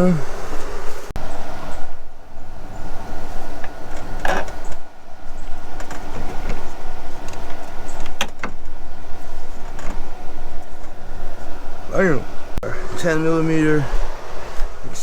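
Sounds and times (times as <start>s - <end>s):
steady mechanical hum: 0.0s - 15.0s.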